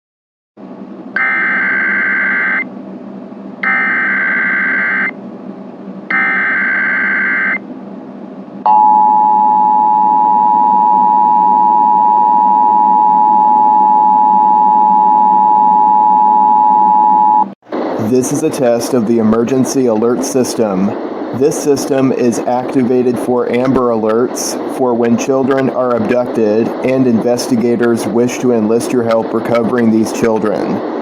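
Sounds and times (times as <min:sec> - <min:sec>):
two-tone attention signal: 0:01.2 - 0:02.6, 0:03.6 - 0:05.2, 0:06.1 - 0:07.6
warbling digital header bursts: 0:06.1 - 0:07.6
steady hiss: 0:17.7 - 0:31.0.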